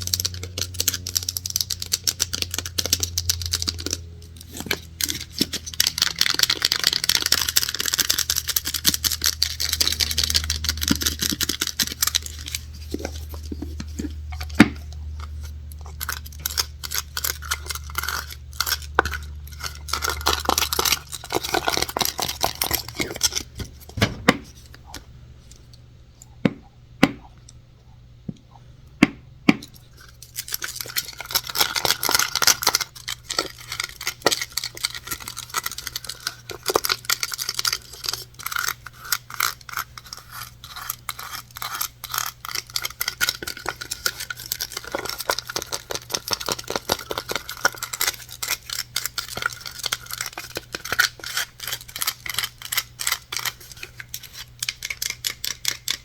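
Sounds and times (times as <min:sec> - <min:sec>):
scratching on objects: 0:00.0 - 0:25.7.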